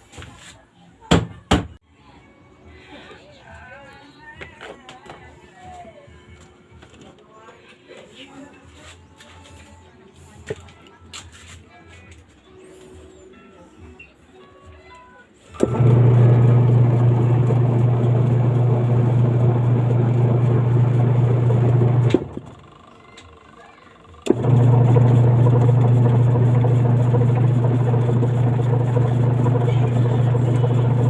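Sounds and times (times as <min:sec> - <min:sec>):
washing machine motor humming: 0:15.6 - 0:23.2, 0:24.1 - 0:31.0.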